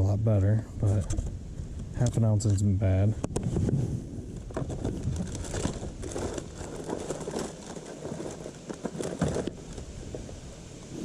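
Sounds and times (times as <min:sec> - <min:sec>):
plastic packaging rustling: 0:04.4 - 0:10.4.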